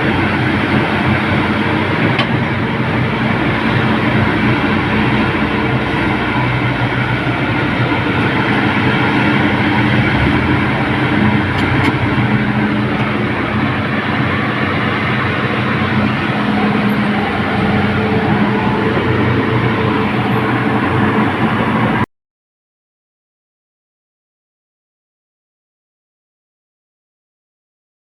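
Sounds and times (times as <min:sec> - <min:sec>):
excavator engine droning: 0:00.0 - 0:22.1.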